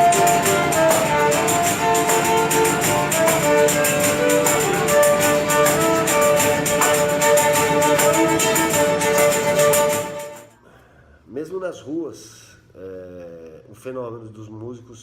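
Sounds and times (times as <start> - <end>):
fast shaken percussion beat: 0.0 - 10.5
sliding melody line: 0.0 - 10.5.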